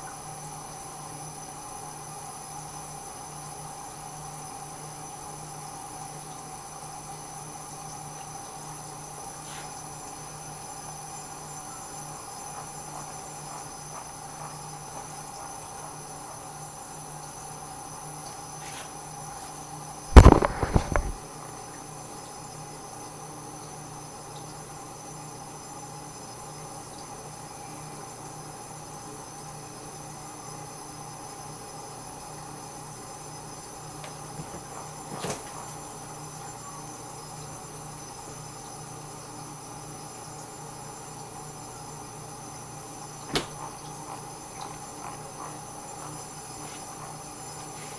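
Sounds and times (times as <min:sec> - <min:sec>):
kitchen hum: 0:05.8 - 0:23.1, 0:30.7 - 0:47.9.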